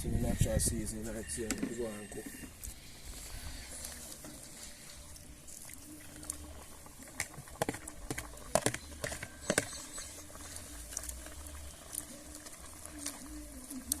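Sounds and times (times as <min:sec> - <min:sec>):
pot cooking: 0:00.9 - 0:14.0.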